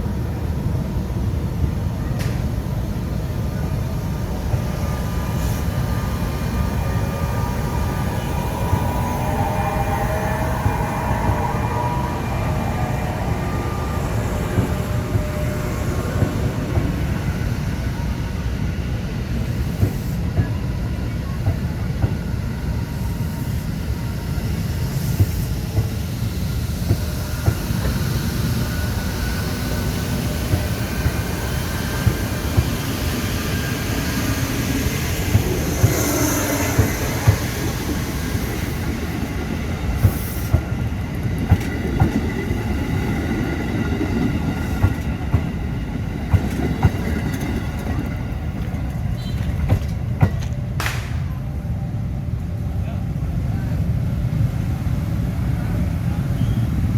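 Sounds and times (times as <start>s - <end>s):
electric train rumbling: 0.0s - 56.9s
train wheels clacking over rail joints: 34.5s - 51.3s.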